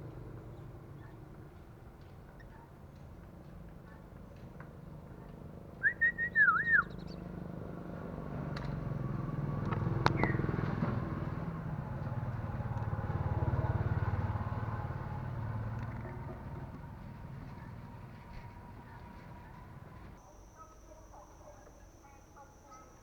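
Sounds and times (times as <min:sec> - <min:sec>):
bird chirp: 0:00.0 - 0:01.5, 0:05.8 - 0:07.4, 0:10.0 - 0:10.7
passing vehicle rumble: 0:04.8 - 0:20.2
bird whistling notes: 0:05.8 - 0:07.2.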